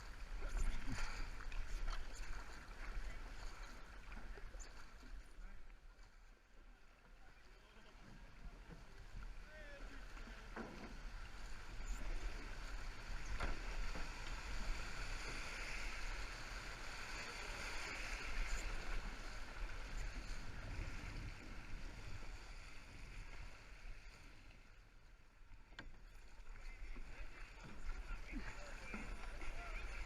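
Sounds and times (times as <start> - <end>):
river water splashing: 0.0 - 30.0
wind rumble on microphone: 18.0 - 23.6.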